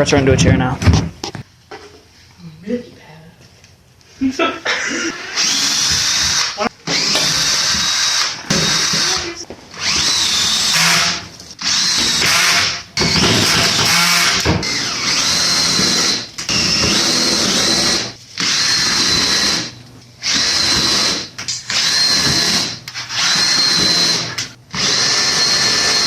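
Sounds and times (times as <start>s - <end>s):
power drill motor whining: 5.2s - 26.0s.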